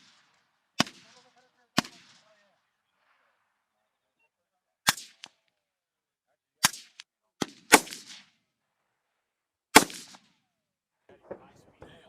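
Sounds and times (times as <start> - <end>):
rifle shots cracking: 0.0 - 2.4, 4.8 - 5.5, 6.6 - 8.4, 9.8 - 10.3.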